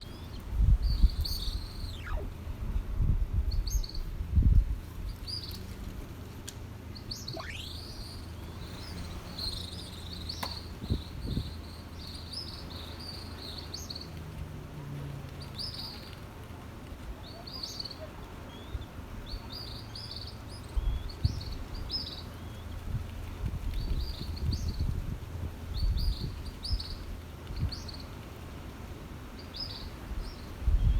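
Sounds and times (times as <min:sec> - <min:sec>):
birds chirping: 0:00.0 - 0:02.4, 0:06.9 - 0:14.2, 0:15.3 - 0:23.0
long falling whistles: 0:01.5 - 0:02.3, 0:07.3 - 0:07.9.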